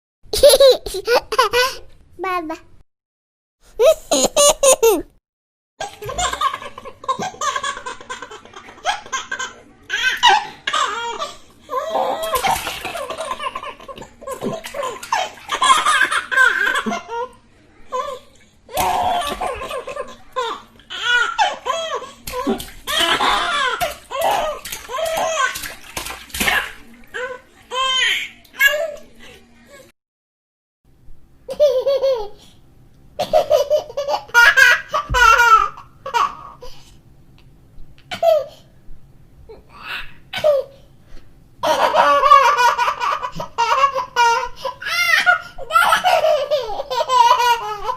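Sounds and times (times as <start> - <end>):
babies laughing: 0.4 - 1.8, 3.8 - 5.1, 5.8 - 17.4, 18.7 - 29.1, 41.6 - 47.9.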